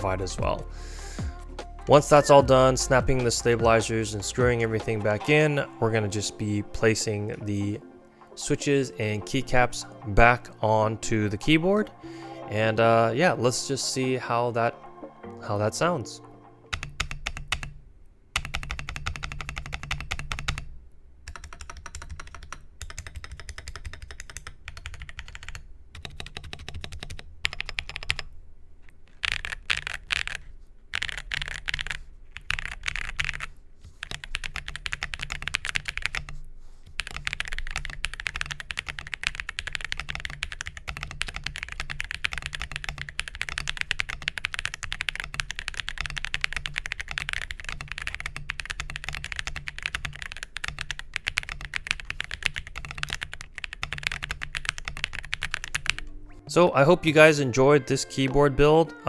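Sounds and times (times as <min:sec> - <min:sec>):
rapid keyboard keystrokes: 0:16.7 - 0:17.8, 0:18.4 - 0:28.4, 0:29.1 - 0:56.0.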